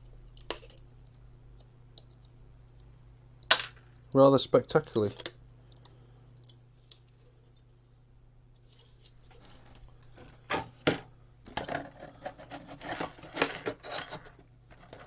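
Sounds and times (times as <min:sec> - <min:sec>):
low electrical hum: 0:00.0 - 0:15.0
parts and tools clattering: 0:10.2 - 0:15.0.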